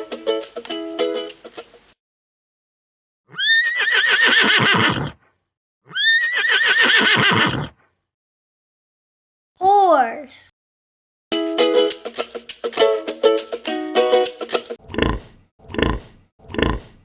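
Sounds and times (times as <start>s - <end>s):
ukulele tune: 0.0s - 1.9s, 11.3s - 14.8s
horse whinnying: 3.3s - 7.9s.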